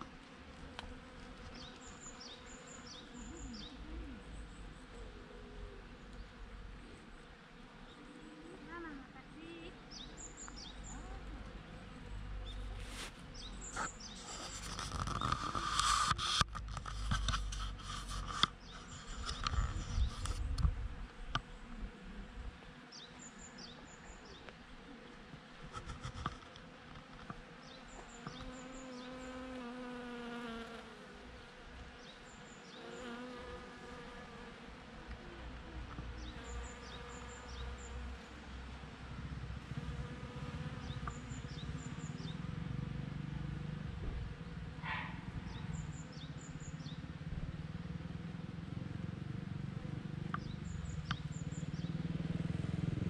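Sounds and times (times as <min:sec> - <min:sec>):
bees buzzing: 0:00.0 - 0:16.2, 0:16.8 - 0:38.9.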